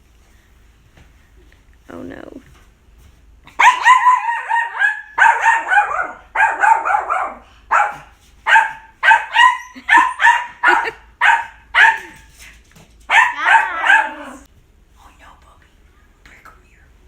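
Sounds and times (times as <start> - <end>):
small dog barking high-pitched yaps: 3.5 - 12.3, 13.1 - 14.5.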